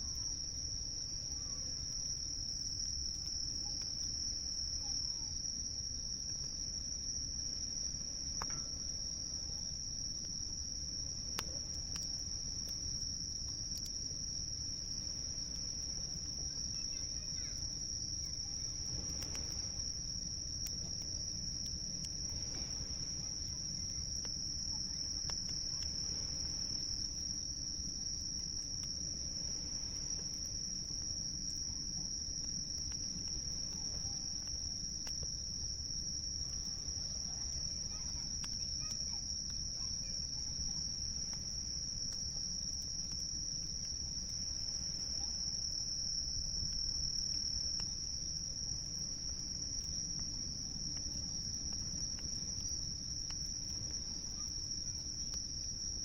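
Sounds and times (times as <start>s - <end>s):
insects trilling: 0.0s - 56.0s
campfire crackling: 0.1s - 56.0s
low rumble of waves: 18.4s - 21.0s, 21.8s - 27.4s.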